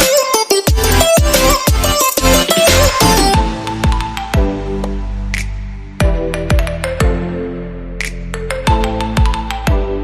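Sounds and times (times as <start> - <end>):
kick drum: 0.7 - 4.6
electronic music with sustained chords: 0.7 - 8.0.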